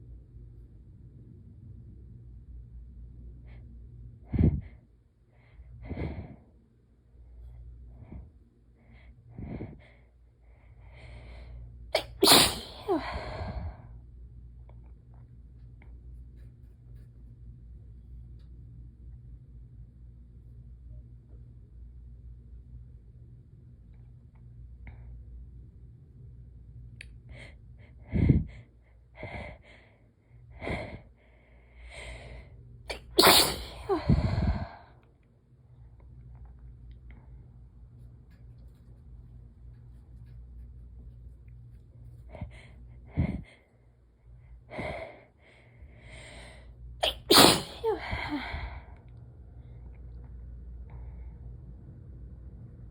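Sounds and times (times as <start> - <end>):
catching breaths: 7.9 - 11.7, 27.3 - 32.6, 33.7 - 35.0, 42.2 - 46.8
woman sneezing: 12.0 - 13.2, 32.9 - 34.4, 47.0 - 48.6.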